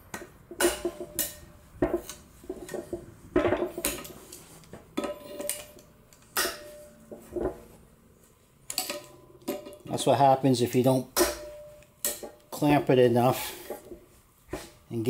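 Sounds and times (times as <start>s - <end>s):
pliers clanking on metal: 3.8s - 6.9s.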